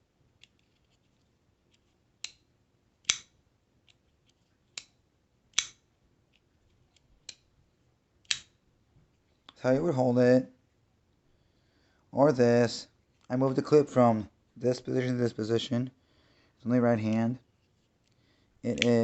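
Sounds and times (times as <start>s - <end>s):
folding knife blade clicking: 3.0s - 3.3s.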